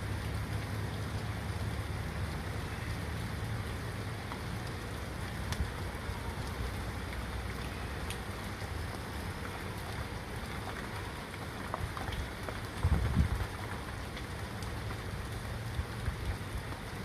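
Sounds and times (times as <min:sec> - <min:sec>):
steady rain hiss: 0:00.0 - 0:17.0
faint drip ticks: 0:00.2 - 0:17.0.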